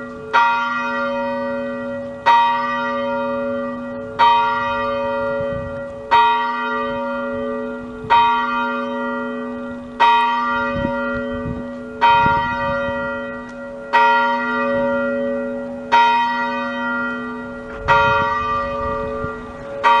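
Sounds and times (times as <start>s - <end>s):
church bell ringing: 0.0s - 20.0s.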